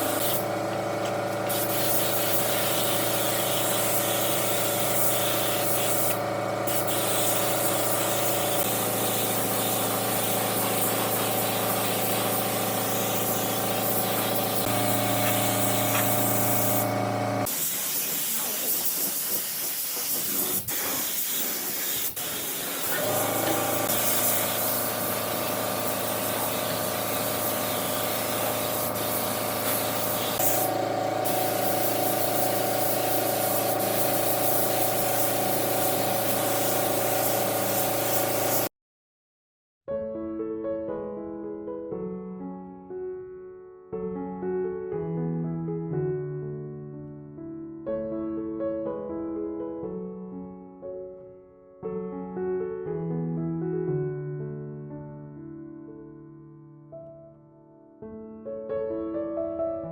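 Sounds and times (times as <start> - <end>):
workshop motor hum: 0.0 - 17.6, 22.2 - 38.7
compressed air hiss: 0.0 - 38.7.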